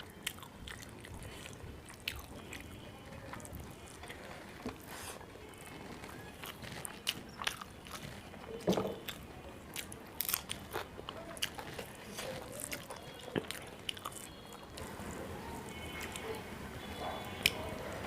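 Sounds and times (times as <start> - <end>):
person chewing food: 0.0 - 16.4, 17.0 - 18.0.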